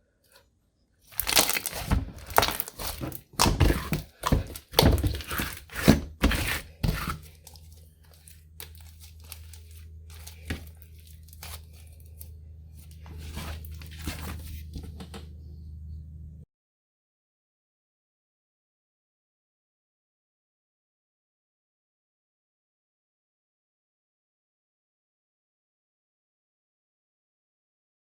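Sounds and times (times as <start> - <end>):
slime crackling and popping: 1.1 - 12.3
low steady hum: 1.1 - 16.4.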